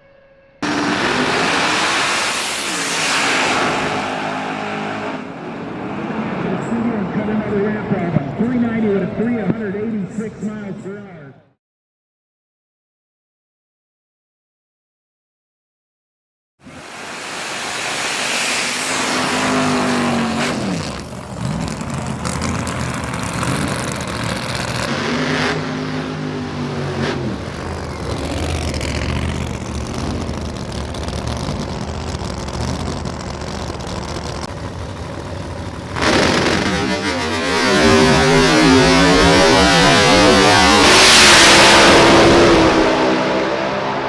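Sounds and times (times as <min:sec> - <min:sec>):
racing car engine at high revs: 0:00.6 - 0:08.0, 0:16.6 - 0:44.0.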